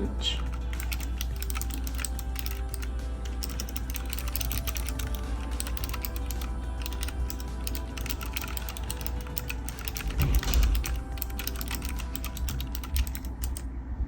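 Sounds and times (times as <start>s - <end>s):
background music: 0.0s - 13.6s
keyboard key clicks: 0.4s - 13.7s.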